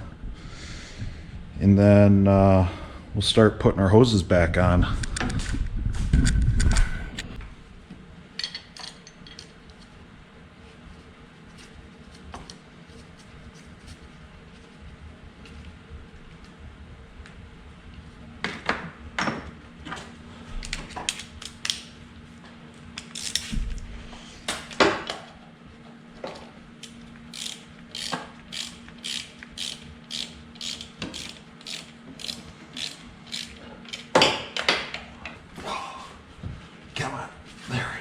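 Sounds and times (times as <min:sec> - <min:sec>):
ratchet wrench clicking: 0:27.3 - 0:34.1.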